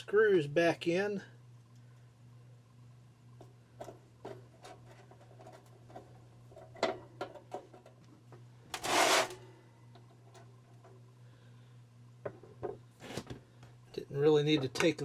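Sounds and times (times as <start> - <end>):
steady low hum: 0.0 - 15.0
metal rattling scrape: 8.8 - 9.4.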